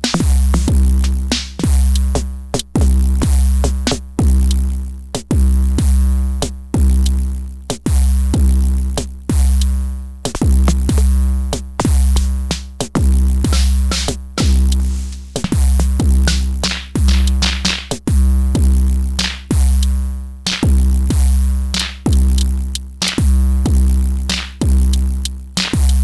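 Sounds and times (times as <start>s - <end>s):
kick drums dropping in pitch: 0.0s - 4.6s, 10.3s - 19.9s, 20.5s - 26.0s
drum machine beat: 0.0s - 26.0s
deep sustained bass: 0.3s - 9.8s, 12.0s - 25.3s.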